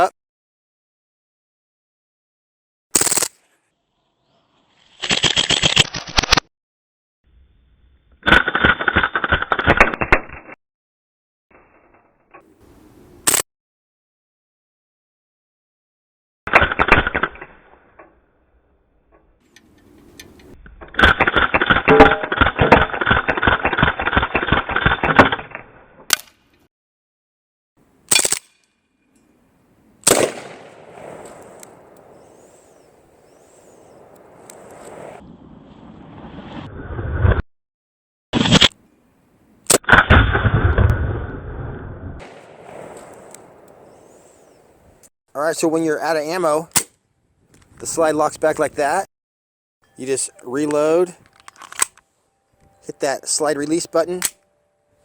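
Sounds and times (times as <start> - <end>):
bb pistol rapid-fire bursts: 30.1 - 32.3
single click: 53.6 - 54.5.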